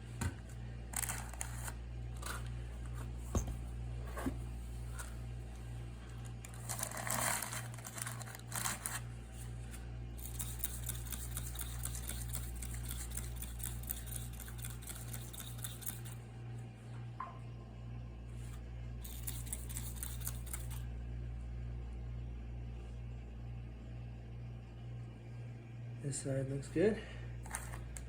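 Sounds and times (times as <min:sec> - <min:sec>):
low pulsing hum: 0:00.0 - 0:28.0.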